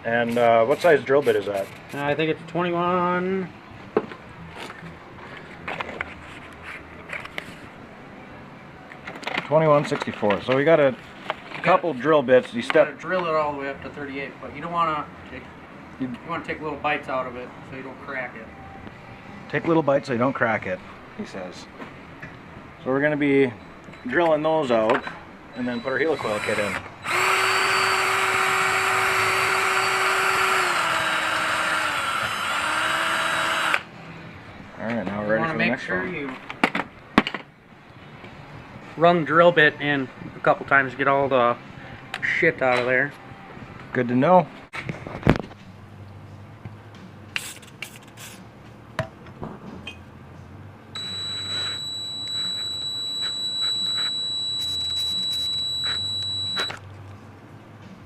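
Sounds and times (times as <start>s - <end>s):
electric drill boring metal: 26.1s - 33.9s, 51.0s - 56.7s.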